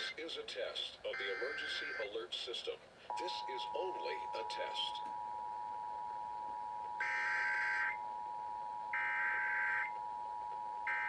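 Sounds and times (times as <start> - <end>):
two-tone attention signal: 3.1 - 11.0.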